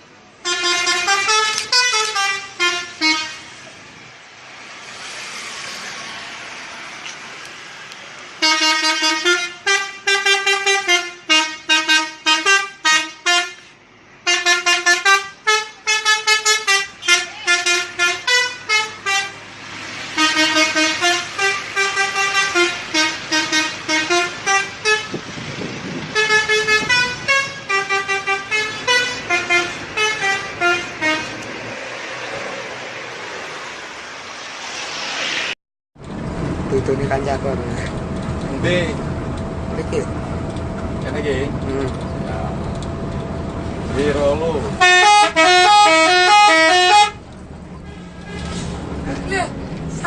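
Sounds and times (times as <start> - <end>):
musical bus horn tune: 0.4 - 3.6, 8.4 - 25.3, 26.0 - 31.6, 44.8 - 47.2, 47.8 - 48.8.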